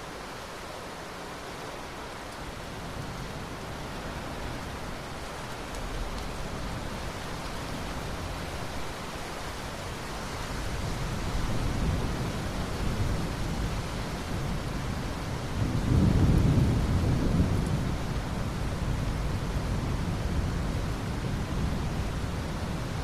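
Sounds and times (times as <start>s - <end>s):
steady rain: 0.0s - 23.0s
rolling thunder: 14.5s - 20.7s.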